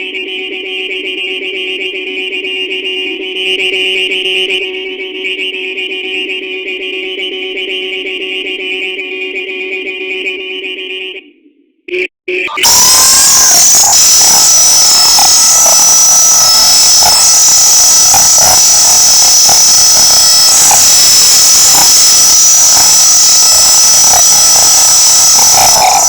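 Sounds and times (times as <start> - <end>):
high whining tones: 12.5 - 26.0
phone speaker harsh buzz: 12.5 - 26.0.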